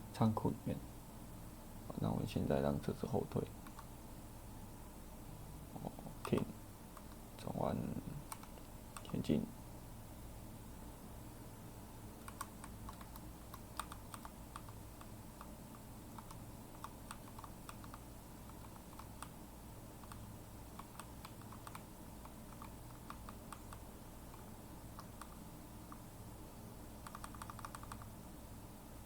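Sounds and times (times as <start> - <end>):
faint low hum: 0.0 - 29.0
keyboard keys clicking: 8.3 - 9.2, 12.2 - 14.8, 20.8 - 24.4, 27.0 - 28.1.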